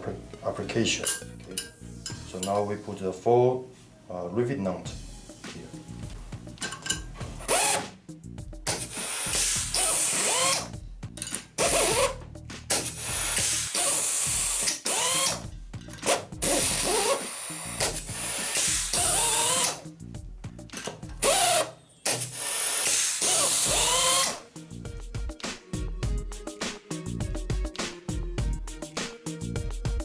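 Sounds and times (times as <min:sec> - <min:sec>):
air motor whirring: 0:07.2 - 0:07.9, 0:08.7 - 0:10.7, 0:11.6 - 0:15.4, 0:16.0 - 0:19.8, 0:21.1 - 0:24.4
air hissing: 0:08.7 - 0:10.8, 0:11.6 - 0:15.4, 0:16.1 - 0:19.9, 0:21.2 - 0:24.4.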